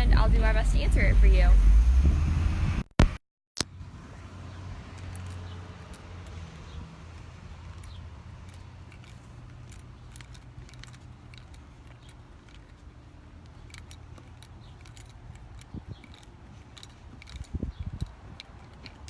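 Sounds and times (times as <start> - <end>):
steady low rumble: 0.0 - 2.9, 3.7 - 19.0.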